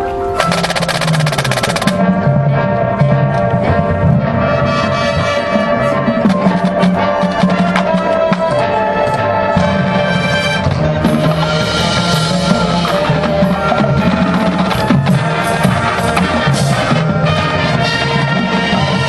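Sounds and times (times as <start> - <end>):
brass chords: 0.0 - 19.0
drum line: 0.4 - 2.2, 6.2 - 8.8, 9.6 - 19.0.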